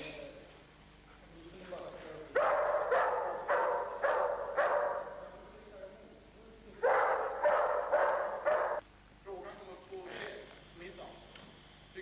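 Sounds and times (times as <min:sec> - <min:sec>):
dog barking: 0:02.4 - 0:05.3, 0:06.8 - 0:08.8.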